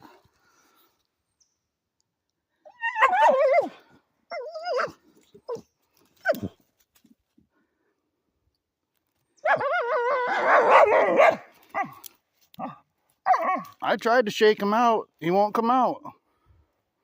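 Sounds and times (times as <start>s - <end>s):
dog whining: 2.7s - 6.6s, 9.4s - 12.0s, 12.6s - 13.7s.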